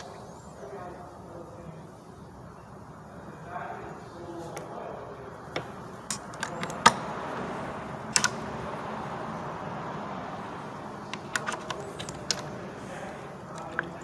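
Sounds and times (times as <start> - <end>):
soft steady hiss: 0.0 - 14.0
hand tools clinking: 6.0 - 7.0, 11.1 - 14.0.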